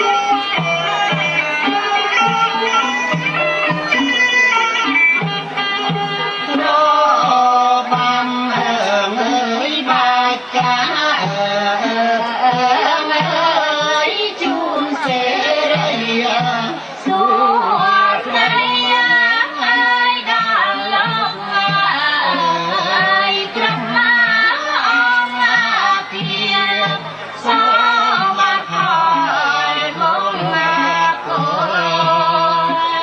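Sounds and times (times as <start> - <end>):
traditional instrumental accompaniment: 0.0 - 33.0
woman singing ornamented melody: 12.2 - 33.0.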